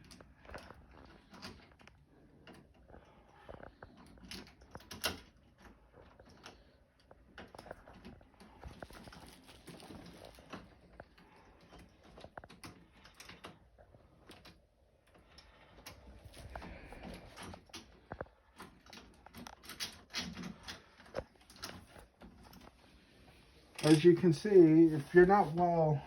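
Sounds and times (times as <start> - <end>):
lock parts clicking and knocking: 3.9 - 8.8, 15.8 - 22.7.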